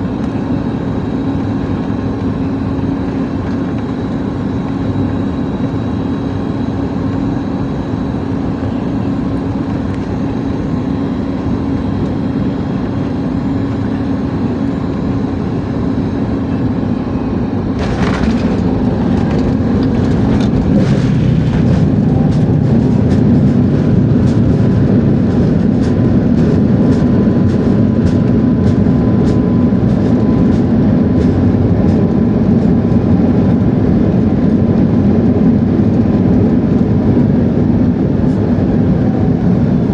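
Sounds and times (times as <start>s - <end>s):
engine and airflow hum: 0.0s - 39.9s
wheels touching down jolt: 17.8s - 25.9s
rumble with rattling knocks: 17.8s - 32.8s.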